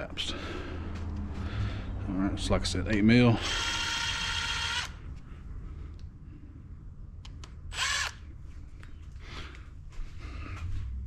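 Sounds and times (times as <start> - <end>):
power drill whine: 3.4 - 5.0, 7.7 - 8.2.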